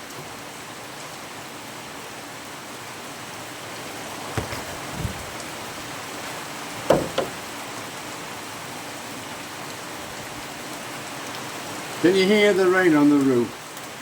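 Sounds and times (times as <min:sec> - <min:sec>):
heavy rain on a roof: 0:00.0 - 0:14.0
short knocks: 0:04.3 - 0:05.3, 0:06.8 - 0:07.5.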